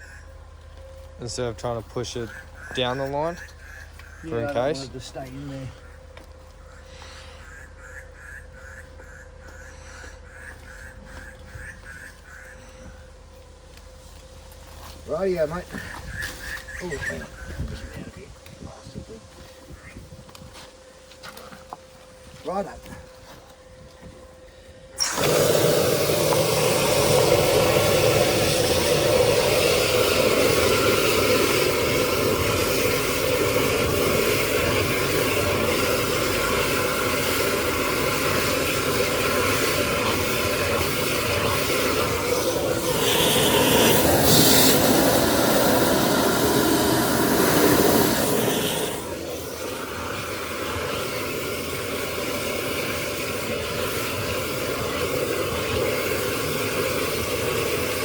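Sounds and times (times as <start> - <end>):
high-pressure pump engine running: 21.0 - 58.0
high-pressure water hissing: 25.0 - 58.0.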